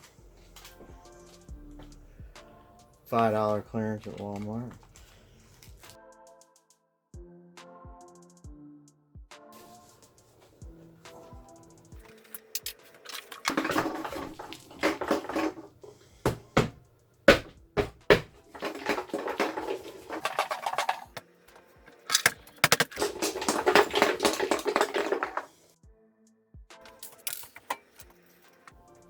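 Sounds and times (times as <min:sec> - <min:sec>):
wood cracking: 0:12.2 - 0:21.2, 0:21.9 - 0:25.6.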